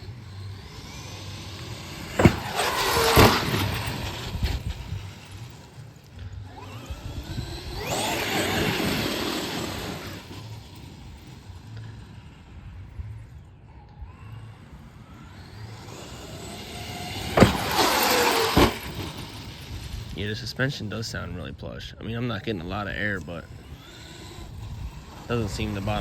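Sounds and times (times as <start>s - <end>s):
toy truck landing thumps: 0.0s - 5.6s, 6.2s - 11.0s, 15.7s - 20.2s
electric motor whine: 0.0s - 26.0s.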